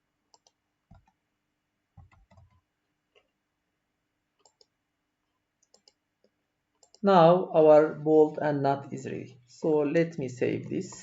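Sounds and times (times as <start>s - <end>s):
computer mouse clicks: 0.3s - 1.2s, 2.0s - 3.4s, 4.4s - 4.8s, 5.6s - 7.0s, 10.6s - 11.0s.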